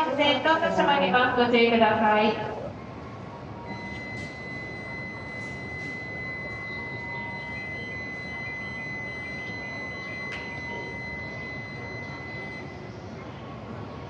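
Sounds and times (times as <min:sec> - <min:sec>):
low rumble of trains: 0:00.0 - 0:14.0
high-pitched electronic warning tone: 0:03.6 - 0:12.9.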